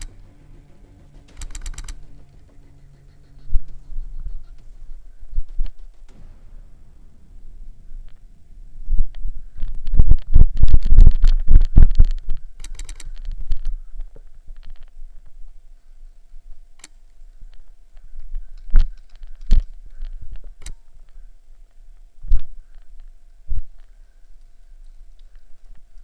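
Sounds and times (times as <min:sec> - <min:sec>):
sharp clicks and knocks: 0:00.0 - 0:06.9.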